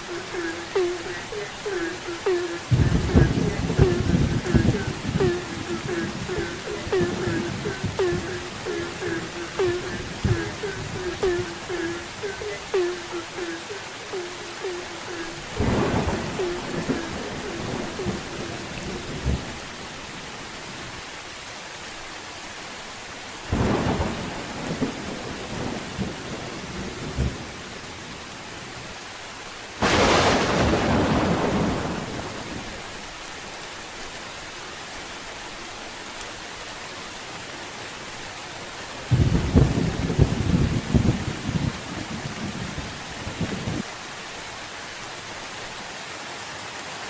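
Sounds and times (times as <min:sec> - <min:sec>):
thunder rumbling: 0:00.0 - 0:19.7, 0:29.8 - 0:32.8, 0:39.1 - 0:43.8
steady rain: 0:00.0 - 0:47.0
sharp thunderclap: 0:29.8 - 0:32.6, 0:39.1 - 0:41.8.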